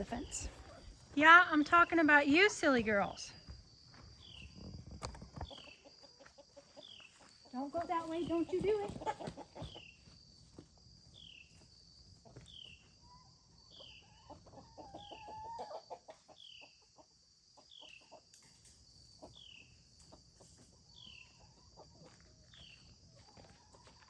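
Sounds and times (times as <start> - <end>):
hens clucking: 4.2 - 10.0, 12.2 - 18.3.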